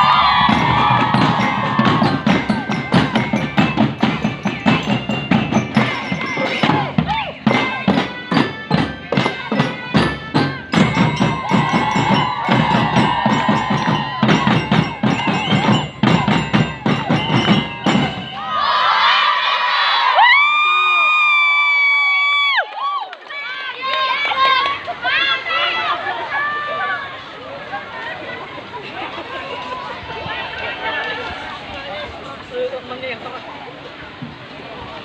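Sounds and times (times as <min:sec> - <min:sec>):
rapid drum strokes: 0:00.0 - 0:18.4
bell-like metallic melody: 0:00.5 - 0:18.4.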